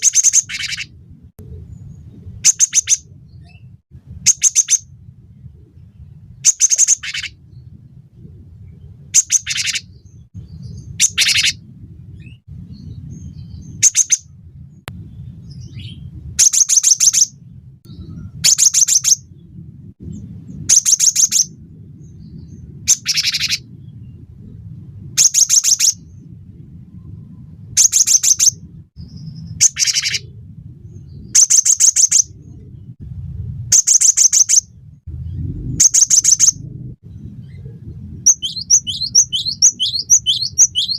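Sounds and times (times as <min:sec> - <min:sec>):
bird chattering song: 0:00.0 - 0:00.9, 0:01.7 - 0:03.7, 0:04.3 - 0:04.9, 0:06.4 - 0:07.7, 0:09.1 - 0:11.6, 0:12.2 - 0:14.3, 0:15.5 - 0:17.3, 0:17.9 - 0:19.3, 0:20.7 - 0:24.2, 0:25.2 - 0:26.0, 0:27.8 - 0:30.3, 0:31.0 - 0:32.4, 0:33.8 - 0:34.7, 0:35.8 - 0:36.6, 0:37.5 - 0:40.9.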